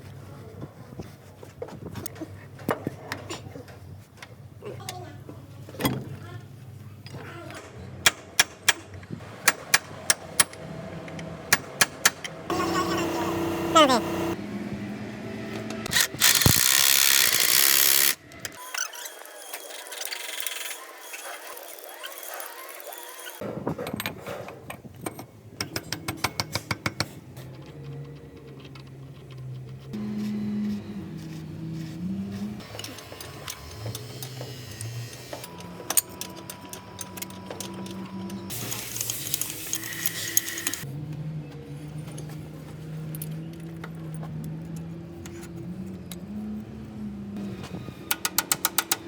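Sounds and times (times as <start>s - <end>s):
small metal parts clicking: 15.9s - 23.4s, 25.1s - 30.0s, 32.6s - 40.9s.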